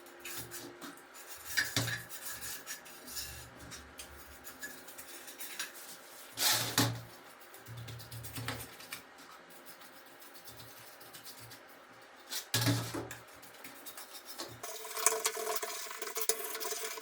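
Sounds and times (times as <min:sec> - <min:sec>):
tools clicking and rubbing: 0:00.1 - 0:17.0.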